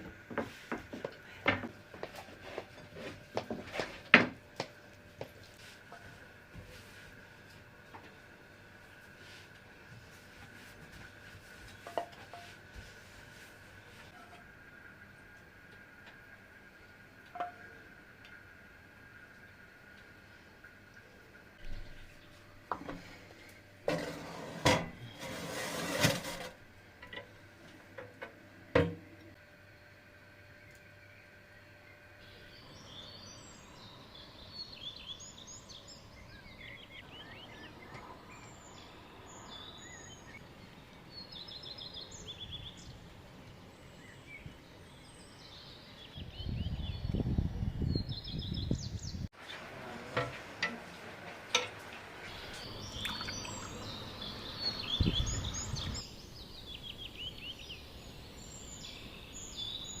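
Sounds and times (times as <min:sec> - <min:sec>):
songbirds chirping and trilling: 0:13.7 - 0:49.3, 0:50.2 - 1:00.0.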